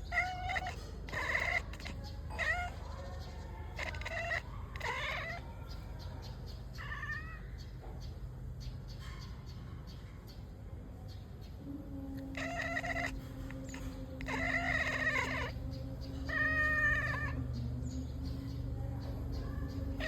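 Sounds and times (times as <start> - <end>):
cat meowing: 0.0 - 5.5, 6.7 - 7.5, 12.2 - 17.6
low hum: 13.1 - 20.0.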